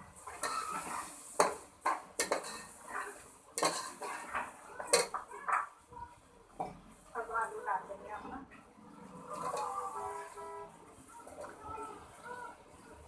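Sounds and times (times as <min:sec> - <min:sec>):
spoon scraping pan: 0:00.1 - 0:05.6, 0:09.2 - 0:10.7
spoon clanking on pot: 0:00.2 - 0:05.6.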